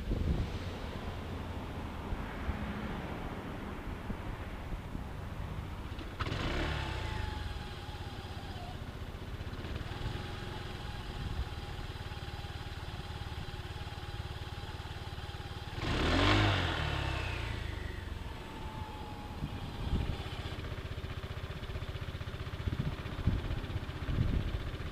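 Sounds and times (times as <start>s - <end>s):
engine idling and revving: 0.0s - 24.9s.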